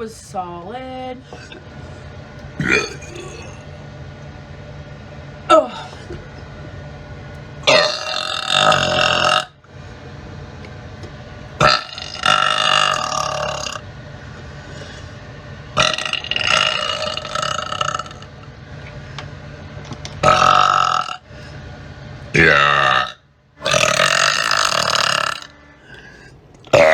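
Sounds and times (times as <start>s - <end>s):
person belching loudly: 2.6s - 3.7s, 7.6s - 9.6s, 11.6s - 13.8s, 15.8s - 18.3s, 20.2s - 21.3s, 22.3s - 26.9s.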